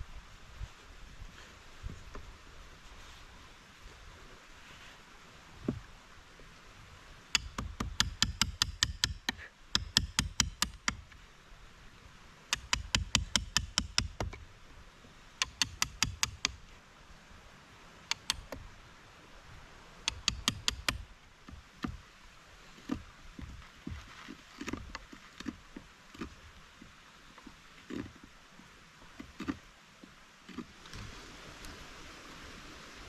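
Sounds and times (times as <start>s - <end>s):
rapid knocking strikes: 7.4s - 11.0s, 12.5s - 14.4s, 15.4s - 16.6s, 20.1s - 21.0s.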